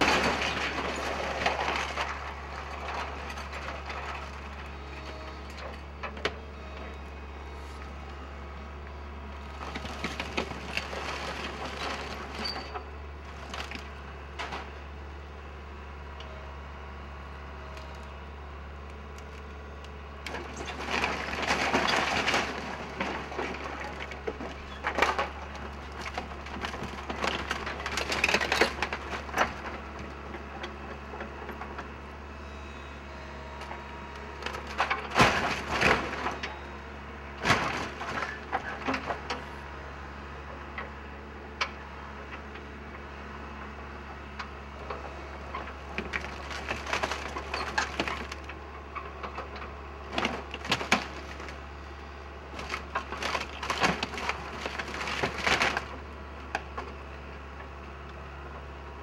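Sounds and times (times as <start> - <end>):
wood cracking and splintering: 0.0 - 6.2, 9.5 - 14.8, 20.2 - 32.0, 33.7 - 36.6, 37.4 - 39.4, 44.9 - 57.0.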